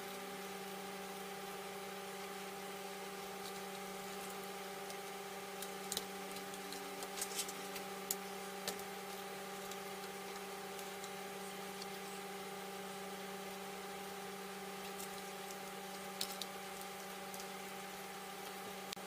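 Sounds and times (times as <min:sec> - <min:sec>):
steady electrical hum: 0:00.0 - 0:19.0.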